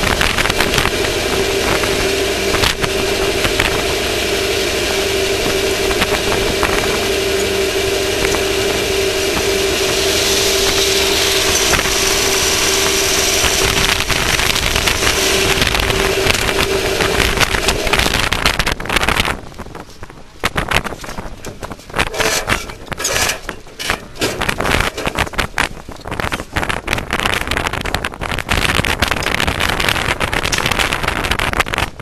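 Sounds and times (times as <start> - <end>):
race vehicle engine running: 0.0 - 32.0
rattling crackling noise: 0.0 - 32.0.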